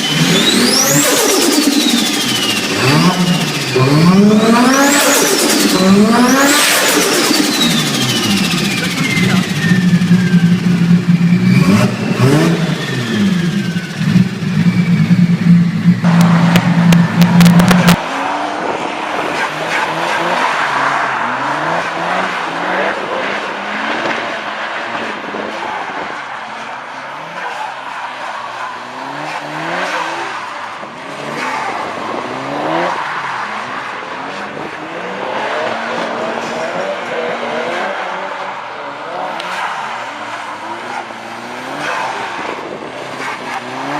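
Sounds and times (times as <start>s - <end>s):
turbocharged car engine running: 0.0s - 18.8s
car engines revving: 0.0s - 43.9s.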